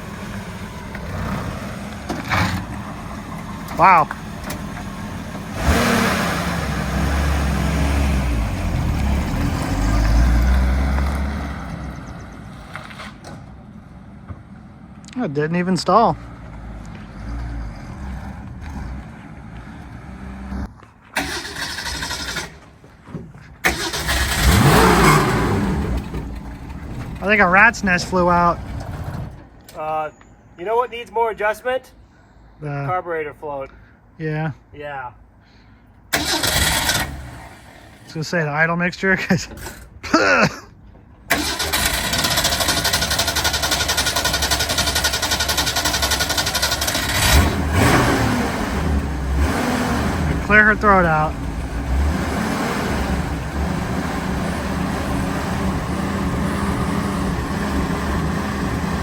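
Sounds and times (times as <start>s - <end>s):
car engine revving: 0.0s - 13.1s, 15.9s - 22.6s, 23.6s - 29.5s, 36.1s - 38.2s, 41.3s - 59.0s.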